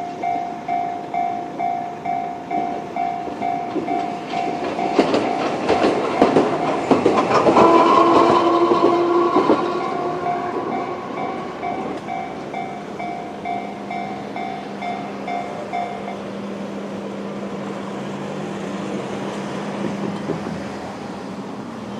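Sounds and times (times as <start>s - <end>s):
level crossing warning bell ringing: 0.0s - 16.8s
tram wheel whine: 0.0s - 21.9s
tram wheels clacking over rail joints: 0.0s - 21.9s.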